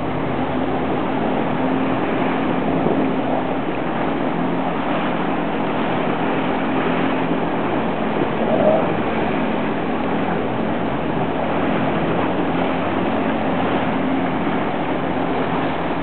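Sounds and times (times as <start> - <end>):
jet ski engine running: 0.0 - 16.0
water rushing: 0.0 - 16.0
wind: 0.0 - 16.0.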